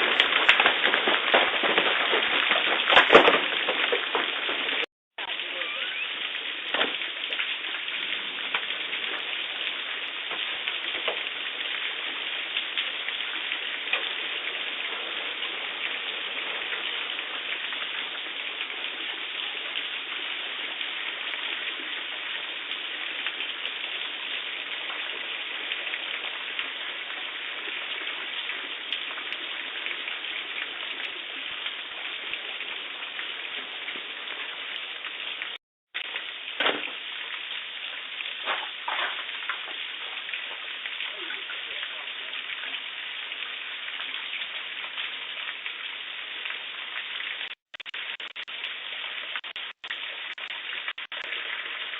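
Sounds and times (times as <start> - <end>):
hailstones striking: 0.0 - 29.8, 38.3 - 42.3
heavy rain pouring: 0.0 - 51.9.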